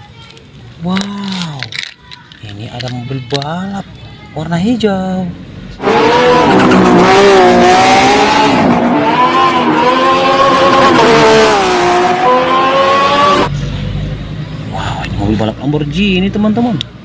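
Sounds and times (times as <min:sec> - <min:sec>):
race car engine revving: 0:05.8 - 0:13.6.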